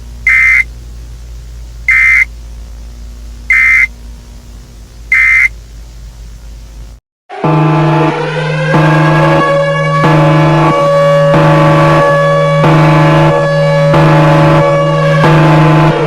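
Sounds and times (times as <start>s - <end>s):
steady low hum: 0.0s - 7.0s
high buzzing alarm beeps: 0.3s - 0.7s, 1.9s - 2.3s, 3.5s - 3.9s, 5.1s - 5.6s
loud siren-like tone: 0.3s - 0.7s, 1.9s - 2.3s, 3.5s - 3.9s, 5.1s - 5.5s, 7.3s - 16.0s.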